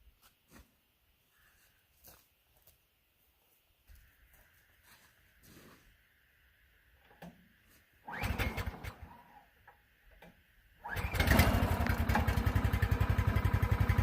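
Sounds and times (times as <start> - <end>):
small engine pull-starting: 8.1 - 9.4, 10.8 - 14.0
small engine running steadily: 10.8 - 14.0.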